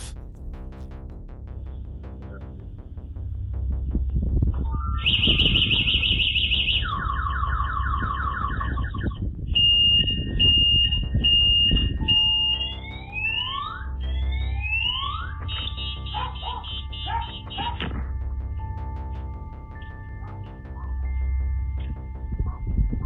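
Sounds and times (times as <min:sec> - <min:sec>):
electronic alarm siren tones: 0:04.6 - 0:23.0.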